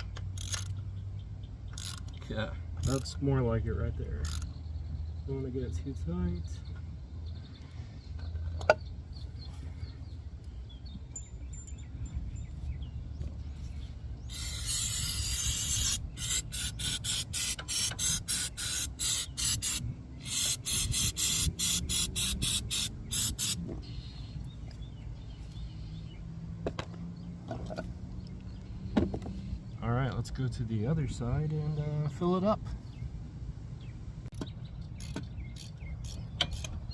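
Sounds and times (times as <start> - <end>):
aerosol spray can hissing: 14.3 - 23.6.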